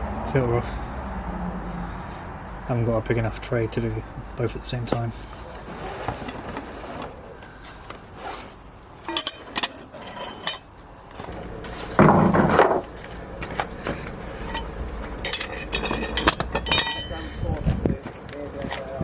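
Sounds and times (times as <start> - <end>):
metal hand tools clinking: 9.0 - 10.7, 14.3 - 17.9.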